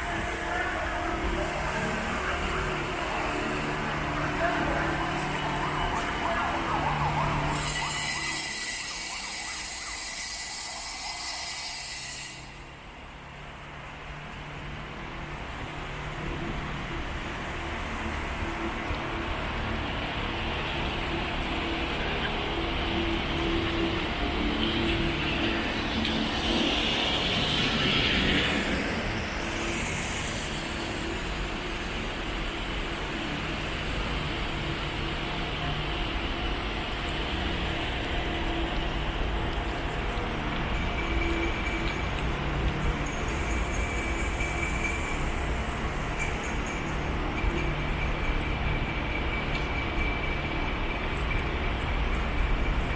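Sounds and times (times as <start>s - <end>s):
traffic noise: 0.0s - 52.9s
siren yelping: 3.8s - 11.2s.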